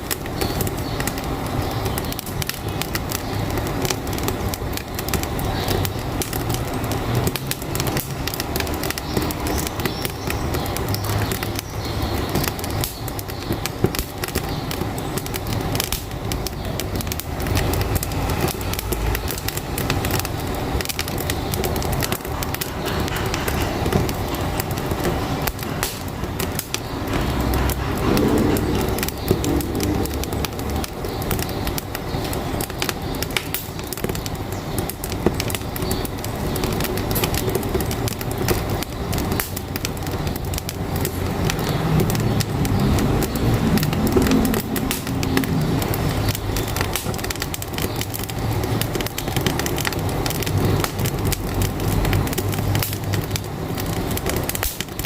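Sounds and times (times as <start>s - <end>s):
truck engine rumbling: 0.0s - 55.0s
wood fire crackling: 0.0s - 55.0s.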